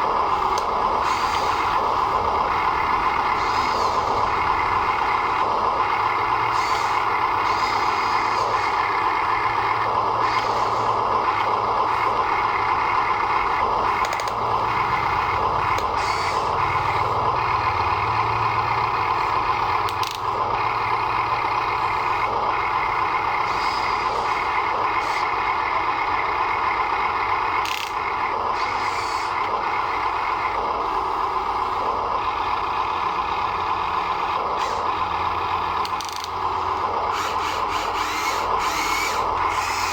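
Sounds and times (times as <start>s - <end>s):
toy electric motors whining: 0.3s - 25.3s, 27.6s - 31.9s, 34.6s - 35.0s, 35.6s - 39.9s
small clicks: 14.0s - 14.4s, 19.9s - 20.3s, 27.6s - 28.0s, 35.8s - 36.4s.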